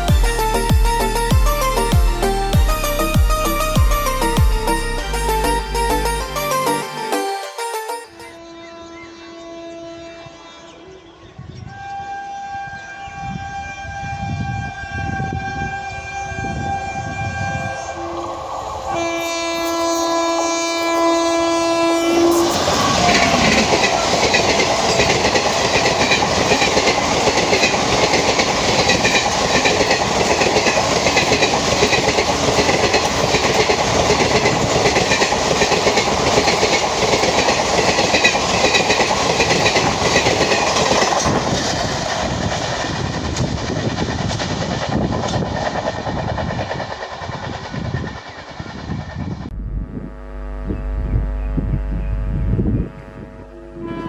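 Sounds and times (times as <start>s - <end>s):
locomotive horn blasts: 8.1s - 10.7s, 11.6s - 38.6s, 52.0s - 54.0s
train wheels clattering: 22.4s - 49.4s.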